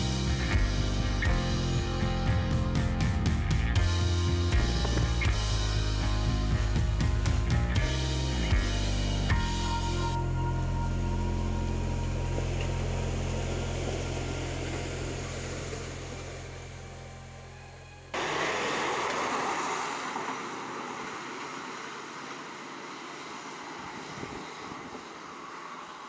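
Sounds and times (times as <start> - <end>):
low held music chord: 0.0 - 18.2
vehicle driving noise: 0.0 - 26.0.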